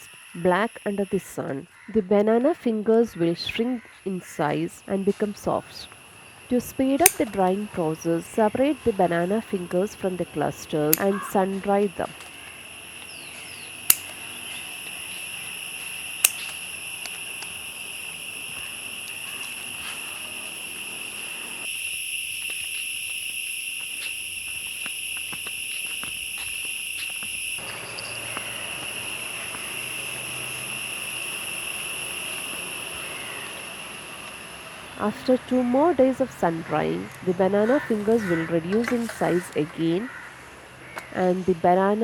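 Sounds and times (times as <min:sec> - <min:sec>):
insects chirring: 0:00.0 - 0:42.0
sharp clicks: 0:07.0 - 0:07.6, 0:10.9 - 0:11.2, 0:13.8 - 0:14.2, 0:16.2 - 0:17.6.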